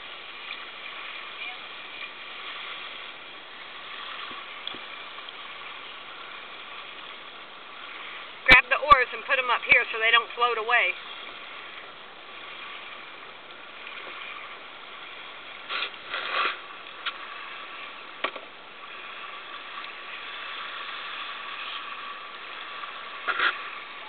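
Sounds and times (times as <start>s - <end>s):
paddles knocking against hull: 4.1s - 5.5s, 15.6s - 18.6s
steady hiss: 13.8s - 18.1s.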